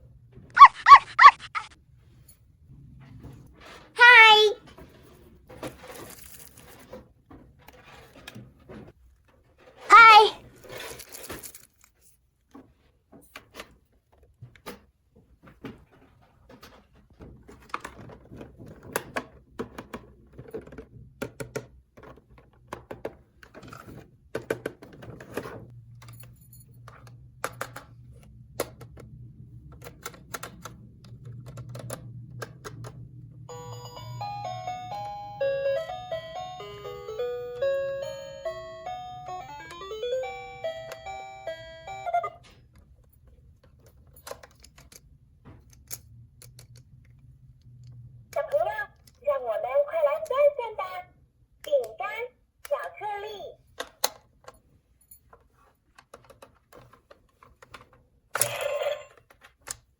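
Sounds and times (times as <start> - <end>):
plastic toy pieces clicking: 56.0 - 59.9.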